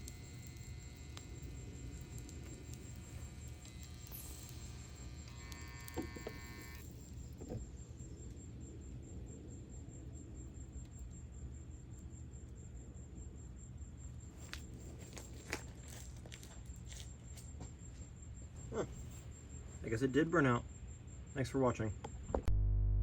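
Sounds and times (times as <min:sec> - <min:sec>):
small electric motor whining: 0:00.0 - 0:07.7
steady low hum: 0:00.0 - 0:23.0.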